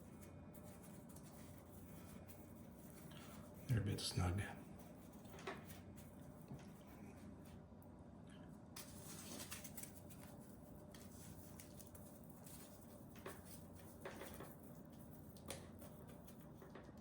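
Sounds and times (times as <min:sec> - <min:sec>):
faint rustling of foam: 0:08.8 - 0:15.2.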